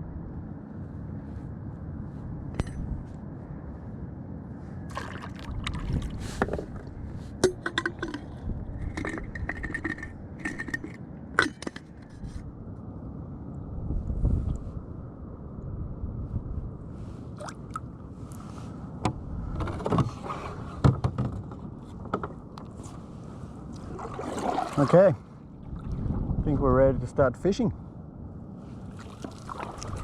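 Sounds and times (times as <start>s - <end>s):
sharp knocks scrapes and clinks: 7.4s - 12.4s
water sloshing against kayak hull: 19.4s - 26.4s, 28.8s - 30.0s.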